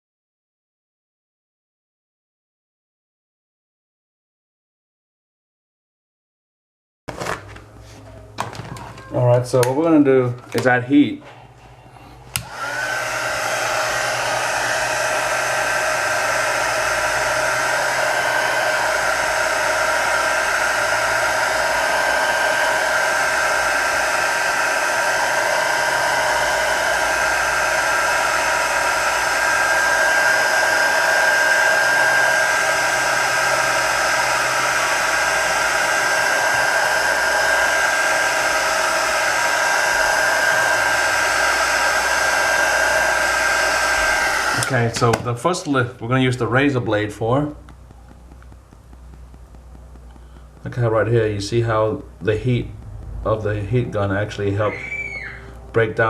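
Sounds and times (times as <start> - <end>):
heat gun blowing hiss: 12.3 - 45.2.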